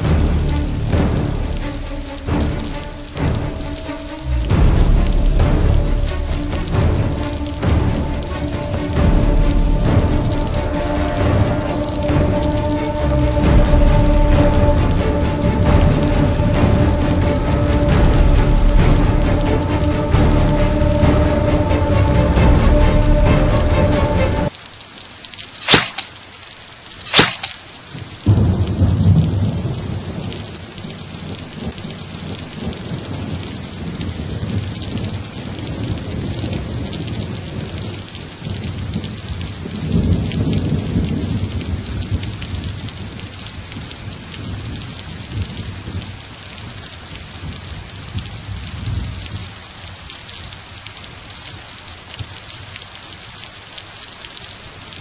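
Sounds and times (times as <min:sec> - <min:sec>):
steady rain: 0:00.0 - 0:55.0
thunder cracks and rumbles: 0:28.2 - 0:43.2.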